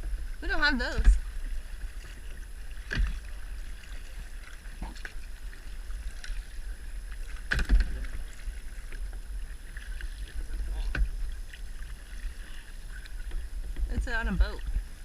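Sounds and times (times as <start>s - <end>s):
paddle dipping into water: 0.0s - 15.0s
wind rumble on microphone: 0.0s - 15.0s.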